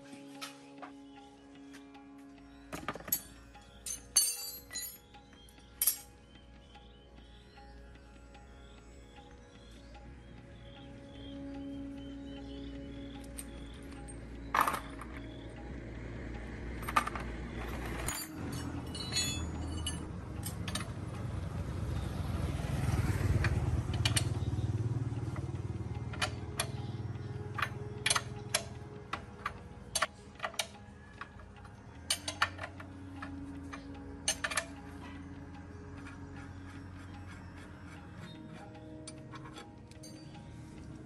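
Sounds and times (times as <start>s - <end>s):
metal tools clinking: 2.7s - 5.1s, 5.8s - 6.2s, 13.3s - 15.2s, 16.8s - 21.2s, 27.5s - 35.2s, 38.2s - 40.5s.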